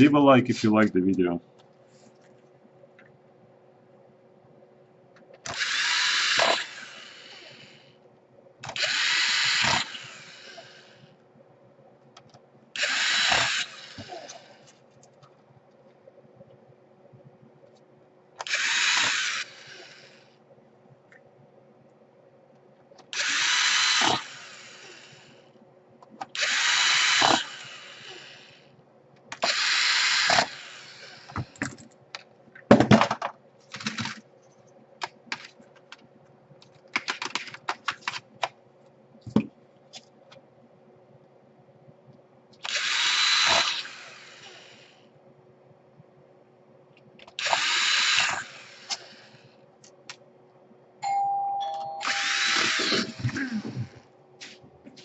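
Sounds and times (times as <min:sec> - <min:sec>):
electric screwdriver whirring: 0:05.5 - 0:07.6, 0:08.6 - 0:10.8, 0:12.8 - 0:14.4, 0:18.4 - 0:20.2, 0:23.1 - 0:25.1, 0:26.4 - 0:28.4, 0:29.4 - 0:31.4, 0:42.6 - 0:44.8, 0:47.4 - 0:49.2, 0:52.0 - 0:53.9.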